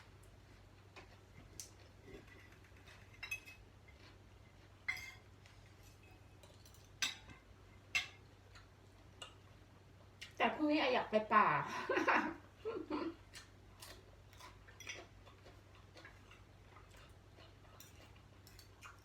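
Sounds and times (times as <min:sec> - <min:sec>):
faint low hum: 0:00.0 - 0:19.0
cutlery clinking on plates: 0:02.2 - 0:04.0, 0:04.8 - 0:07.4.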